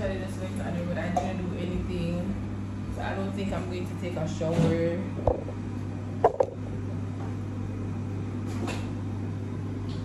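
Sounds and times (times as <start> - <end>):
microwave oven humming: 0.0 - 10.0
sharp knocks: 6.2 - 6.6.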